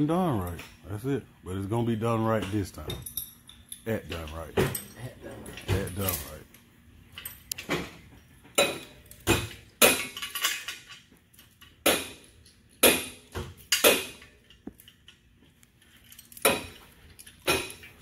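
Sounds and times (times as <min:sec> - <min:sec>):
metal tools clanking: 0:01.9 - 0:18.0.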